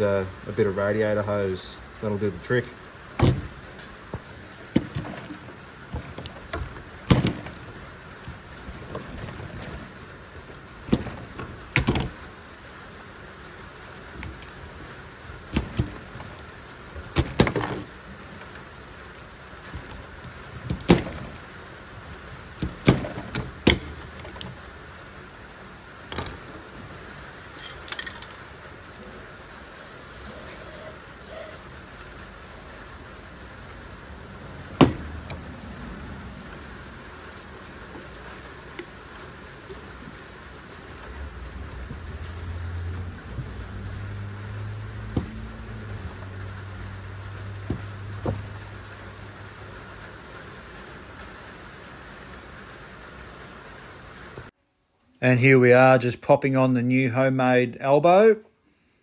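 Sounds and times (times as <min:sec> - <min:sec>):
steady background hiss: 0:00.0 - 0:59.0
small parts and tools clicking: 0:27.5 - 0:28.5, 0:29.6 - 0:31.6.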